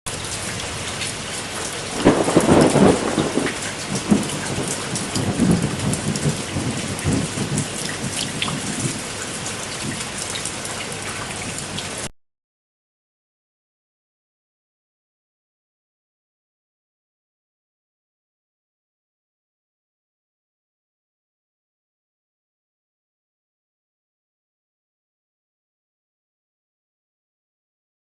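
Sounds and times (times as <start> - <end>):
heavy rain falling: 0.1 - 12.1.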